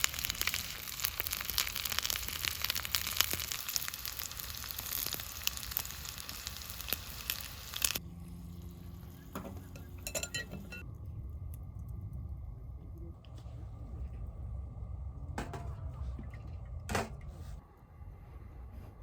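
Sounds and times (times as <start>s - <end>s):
food sizzling in a pan: 0.0s - 8.0s
low steady rumble: 8.0s - 19.0s
light clinks: 9.5s - 10.9s.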